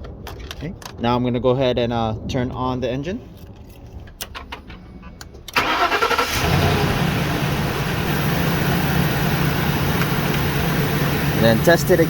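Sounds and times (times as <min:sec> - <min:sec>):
car engine starting and idling: 0:04.2 - 0:12.0.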